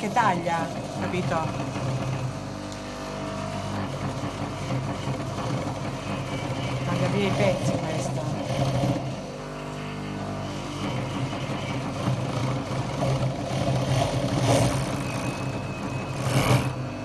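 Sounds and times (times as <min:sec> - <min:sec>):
sewing machine running: 0:12.0 - 0:16.8
knife trimming fabric: 0:14.4 - 0:16.8.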